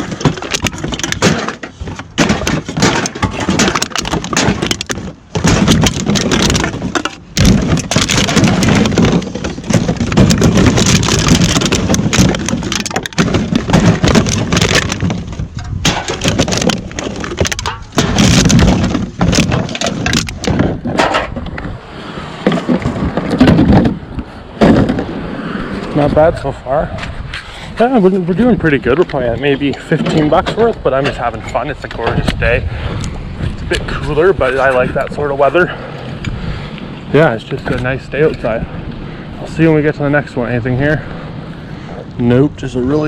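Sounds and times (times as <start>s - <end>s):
plastic bag of cans clattering: 0.0s - 21.4s.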